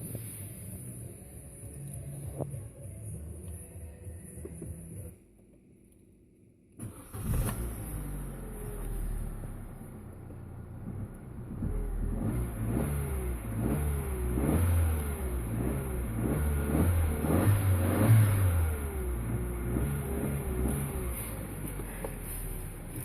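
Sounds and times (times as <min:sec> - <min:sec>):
car engine starting: 0:06.7 - 0:23.0
engine revving in throttle blips: 0:06.8 - 0:23.0.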